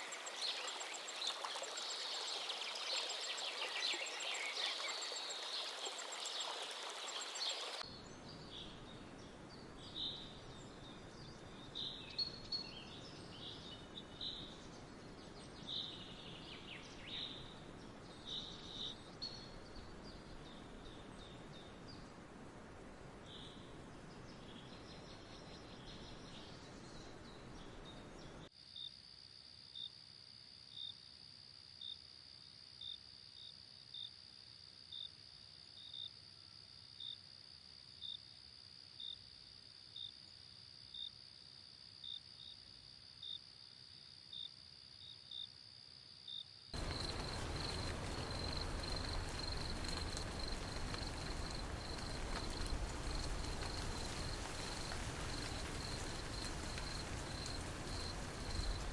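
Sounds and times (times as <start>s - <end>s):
insects trilling and chirping: 0.0s - 7.9s, 9.5s - 29.0s, 31.8s - 58.9s
outdoor noise: 0.0s - 28.6s, 46.8s - 58.9s
hiss: 46.8s - 58.9s.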